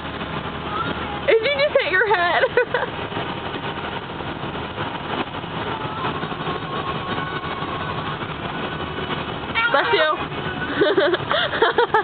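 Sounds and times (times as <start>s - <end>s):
bus engine rumble: 0.0s - 12.0s
road noise: 0.0s - 12.0s.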